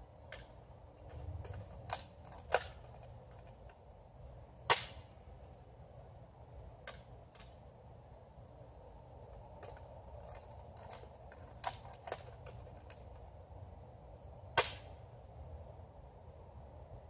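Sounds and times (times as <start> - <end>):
toy blaster sharp shot: 4.7 - 5.0, 14.6 - 14.9.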